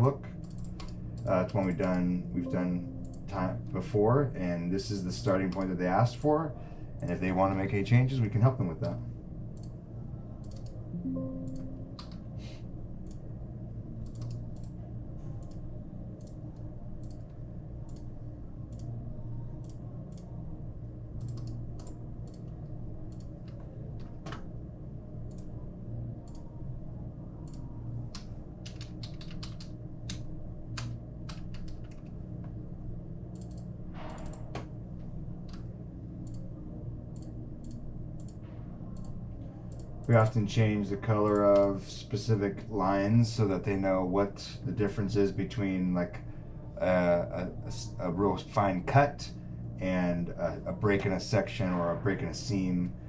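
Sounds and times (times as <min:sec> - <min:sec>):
low hum: 0:00.0 - 0:53.0
keyboard typing and clicks: 0:00.4 - 0:03.4, 0:10.4 - 0:12.3, 0:27.5 - 0:30.2, 0:30.8 - 0:32.1.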